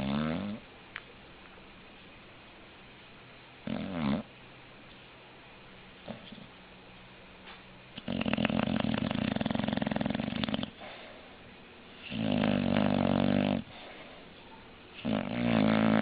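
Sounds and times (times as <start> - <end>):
dog snoring: 0.0 - 0.6, 3.6 - 4.3, 6.0 - 6.5, 8.0 - 11.0, 12.0 - 13.8, 15.0 - 16.0.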